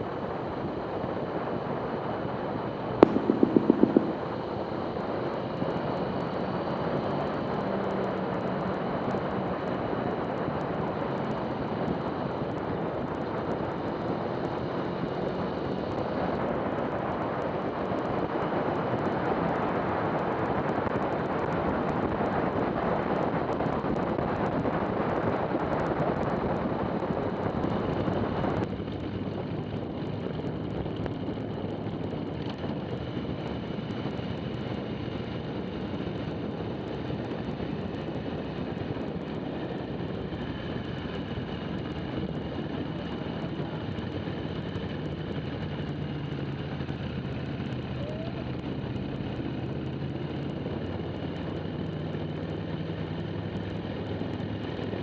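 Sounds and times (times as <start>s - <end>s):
motorcycle engine running: 0.0s - 4.9s
wind rushing over microphone: 0.0s - 4.9s.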